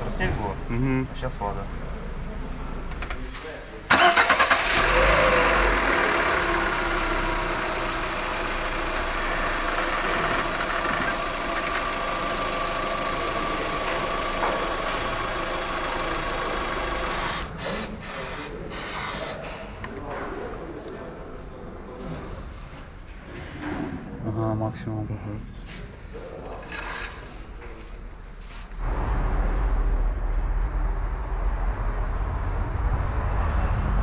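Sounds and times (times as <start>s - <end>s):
car engine idling: 3.9s - 17.6s.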